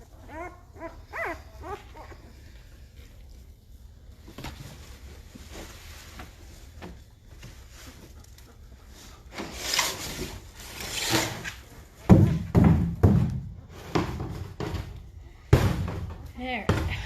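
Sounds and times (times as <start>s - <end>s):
puppies whimpering: 0.0s - 2.8s
bedding rustling: 0.0s - 17.0s.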